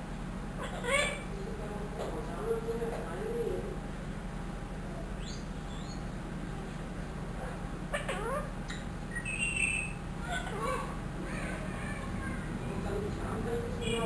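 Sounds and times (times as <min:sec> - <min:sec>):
parrot squeaks and chirps: 0:00.6 - 0:01.3, 0:05.2 - 0:06.1, 0:07.9 - 0:11.9.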